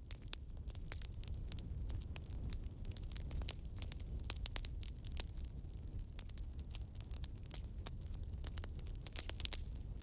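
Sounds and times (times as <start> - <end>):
pine cones crackling in fire: 0.0 - 10.0.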